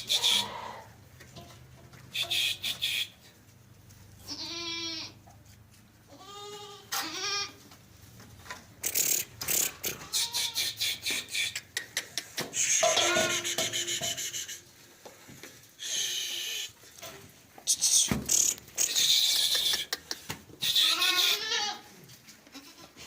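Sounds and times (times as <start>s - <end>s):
goats bleating: 0.0s - 0.9s, 4.2s - 5.2s, 6.1s - 7.6s, 9.6s - 10.8s, 20.6s - 21.9s, 22.5s - 23.0s
dry clicking and scraping: 8.3s - 10.1s, 17.0s - 20.4s.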